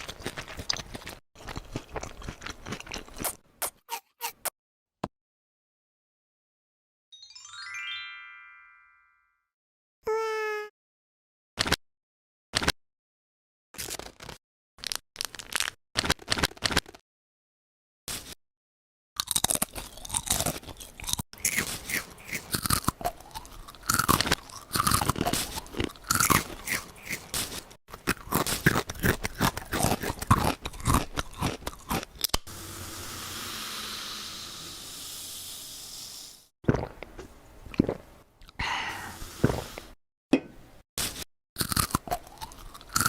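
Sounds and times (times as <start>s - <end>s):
close crunching and crackling: 0.0s - 3.4s, 13.8s - 17.0s, 19.2s - 32.4s.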